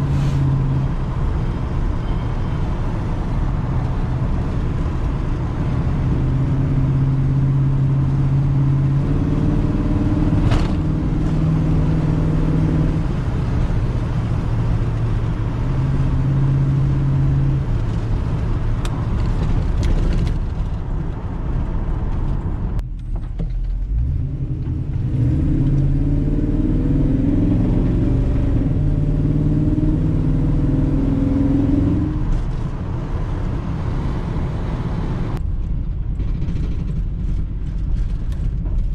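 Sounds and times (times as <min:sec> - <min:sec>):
car engine running: 0:31.8 - 0:38.9.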